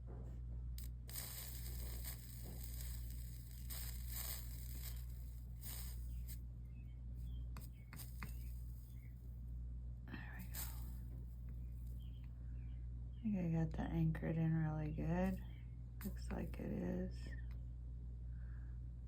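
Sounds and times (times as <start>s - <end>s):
steady low hum: 0.0s - 19.0s
soldering iron sizzling: 0.8s - 9.2s, 10.3s - 12.2s.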